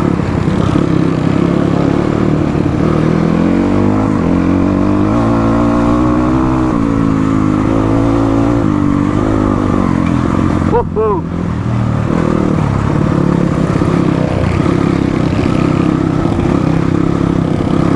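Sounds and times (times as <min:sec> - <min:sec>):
motorcycle engine accelerating: 0:00.0 - 0:17.9.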